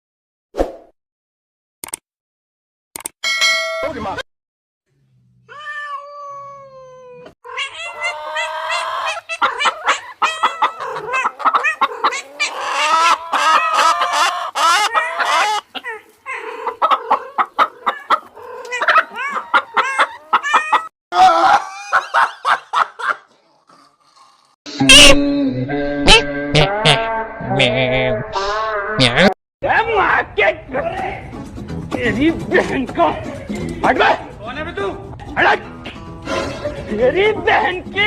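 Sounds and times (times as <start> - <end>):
cat meowing: 5.5 - 13.6, 17.8 - 20.9
rapid pitched animal cries: 7.4 - 20.9
chickens clucking: 7.7 - 20.9.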